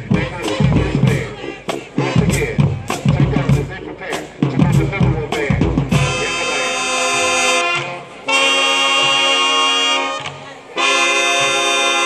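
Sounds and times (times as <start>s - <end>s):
brass playing held chords: 0.0s - 4.1s, 4.7s - 12.0s
drums: 0.0s - 8.2s.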